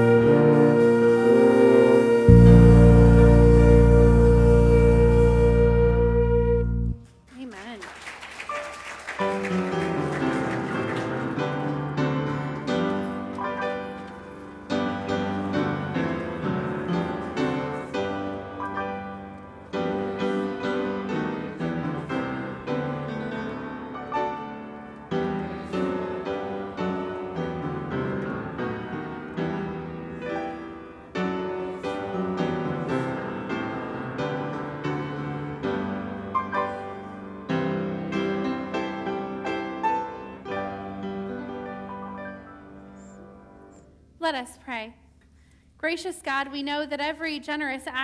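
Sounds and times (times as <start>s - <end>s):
slow solo piano chords: 9.6s - 43.8s.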